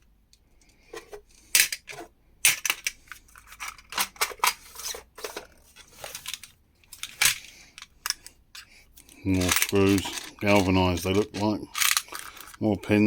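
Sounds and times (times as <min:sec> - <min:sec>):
metal screws clinking in box: 0:09.3 - 0:12.6.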